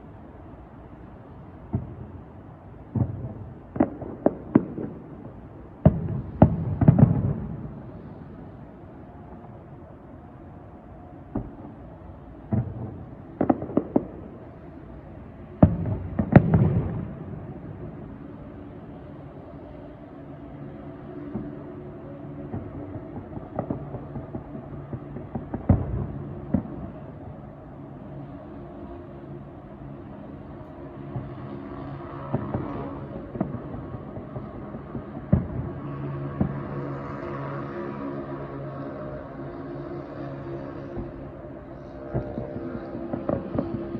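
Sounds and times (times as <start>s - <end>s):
fireworks bursting: 1.5s - 43.9s
boat engine hum: 35.7s - 43.9s.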